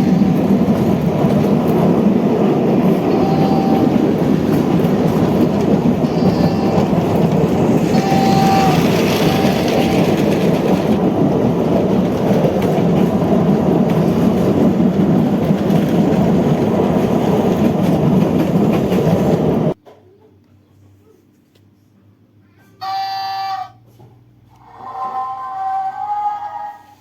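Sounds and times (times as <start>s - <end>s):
train rumbling on rails: 0.0s - 19.8s, 22.8s - 27.0s
brief high tones: 6.0s - 7.0s, 7.9s - 10.2s, 22.8s - 23.8s.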